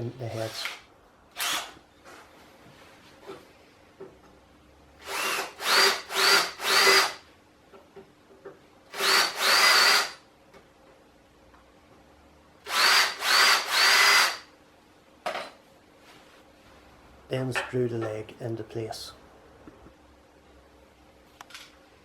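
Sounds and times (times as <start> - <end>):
power drill whine: 1.4 - 1.8, 5.0 - 7.2, 8.9 - 10.2, 12.7 - 14.5.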